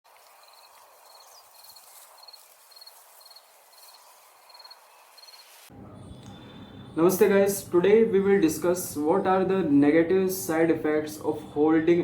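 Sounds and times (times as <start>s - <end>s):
steady hiss: 0.1s - 5.7s
cricket chirping: 0.4s - 7.0s.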